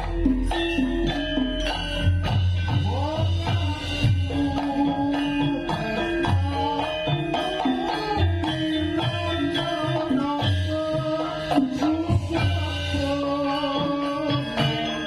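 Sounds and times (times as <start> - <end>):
gamelan music: 0.0 - 15.0.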